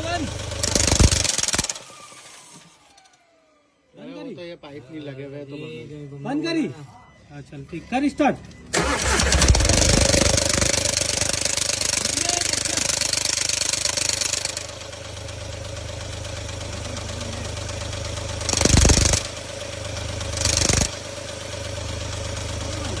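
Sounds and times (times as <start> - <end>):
engine throttle blips: 8.4 - 14.6, 16.6 - 19.4
car engine idling with hiss: 8.7 - 23.0.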